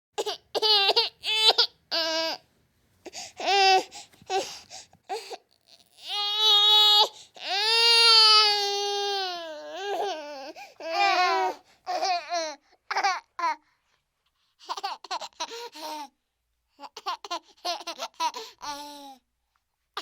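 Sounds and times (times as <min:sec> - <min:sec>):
baby crying: 0:00.2 - 0:02.4, 0:03.4 - 0:13.6.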